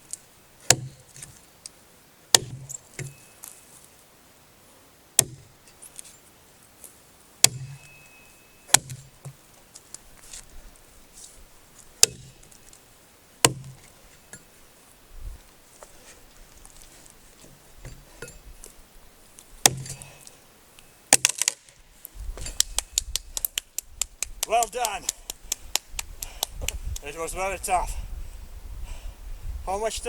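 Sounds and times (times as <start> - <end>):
axe chopping into log: 0.6 - 1.0, 2.3 - 3.2, 5.2 - 5.5, 7.4 - 7.8, 8.7 - 9.1, 12.0 - 12.5, 13.4 - 13.8, 19.6 - 20.1, 21.1 - 21.6.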